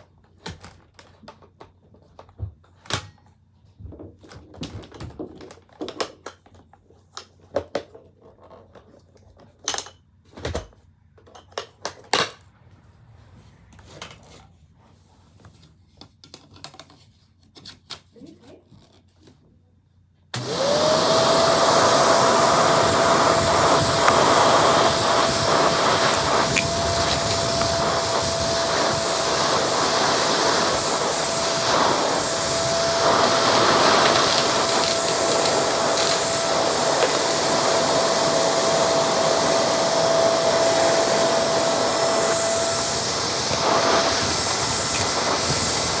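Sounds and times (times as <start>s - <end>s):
vacuum cleaner motor whine: 20.3s - 46.0s
gritty suction hiss: 22.6s - 38.0s, 41.6s - 46.0s.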